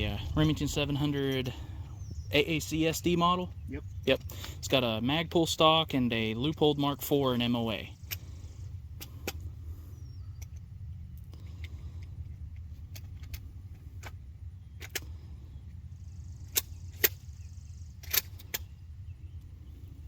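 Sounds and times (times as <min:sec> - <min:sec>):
steady low rumble: 0:00.0 - 0:20.0.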